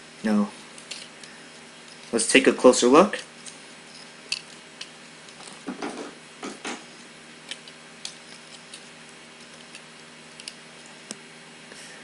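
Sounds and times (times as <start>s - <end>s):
low steady hum: 0.0s - 12.0s
plastic toy clicking and rubbing: 7.5s - 11.0s.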